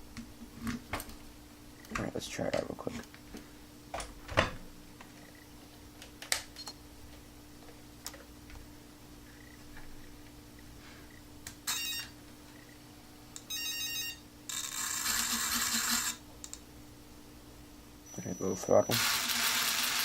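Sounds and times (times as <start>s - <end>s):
electric motor whining: 18.9s - 20.0s.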